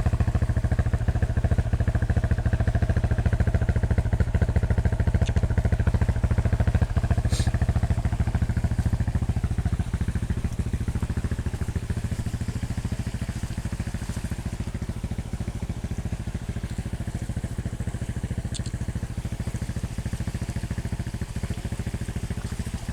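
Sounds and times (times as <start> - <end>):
motorcycle engine idling: 0.0 - 22.9
faint high ticks: 18.5 - 18.9.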